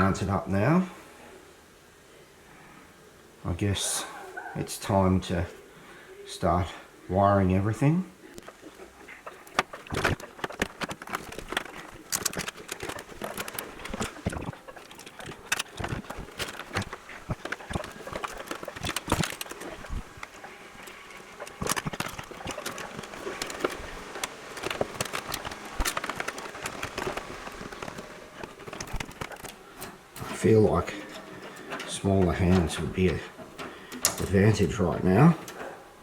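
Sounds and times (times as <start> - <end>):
cables clicking and rustling: 7.4 - 36.0.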